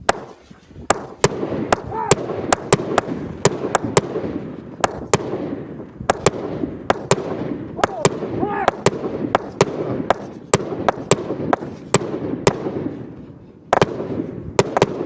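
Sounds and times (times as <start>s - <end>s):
firework sharp reports: 0.0s - 15.0s.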